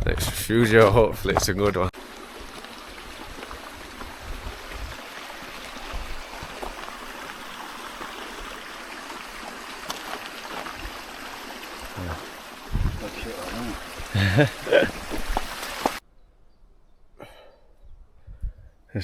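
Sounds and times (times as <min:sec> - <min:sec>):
stream water rushing: 0:02.0 - 0:16.0.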